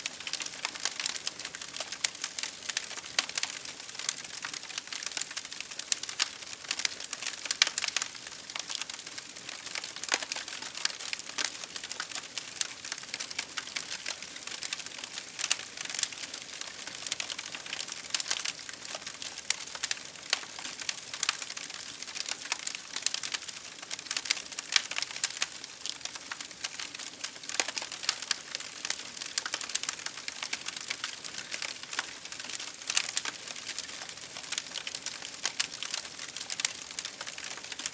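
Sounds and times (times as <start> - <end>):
wood fire crackling: 0.0 - 37.9.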